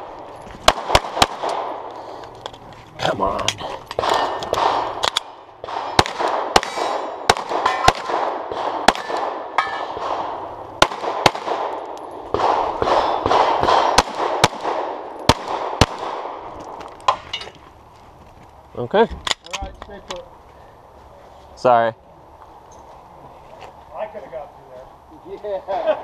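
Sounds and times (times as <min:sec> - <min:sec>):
pistol shots echoing: 0:00.6 - 0:01.9, 0:03.9 - 0:16.5
clang of steel targets: 0:07.6 - 0:08.1, 0:08.9 - 0:10.0.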